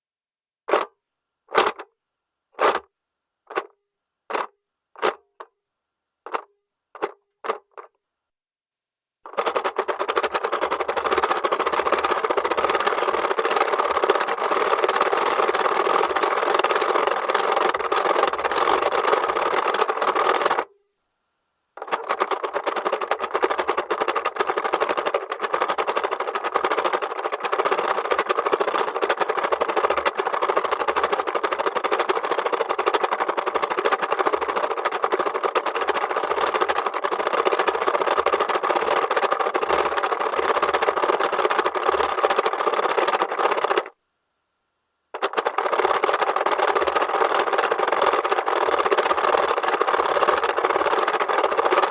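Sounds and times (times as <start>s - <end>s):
plastic mechanism clicks: 1.5s - 1.9s, 3.5s - 3.7s, 4.3s - 5.5s, 6.2s - 8.0s, 9.3s - 20.7s, 21.8s - 44.0s, 45.2s - 51.9s
toy clock clattering rattle: 9.3s - 20.7s, 21.8s - 43.9s, 45.2s - 51.9s.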